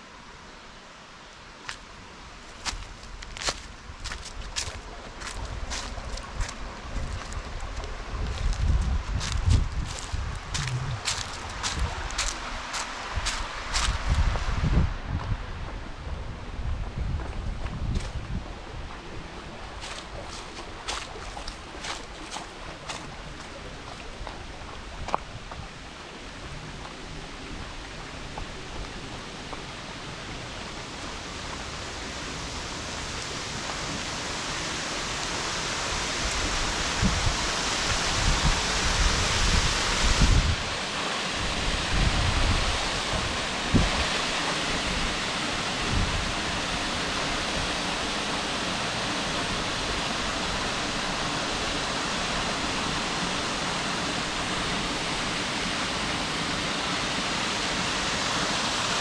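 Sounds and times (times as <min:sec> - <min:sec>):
waterfall rushing: 0:09.8 - 0:15.1, 0:25.8 - 0:59.0.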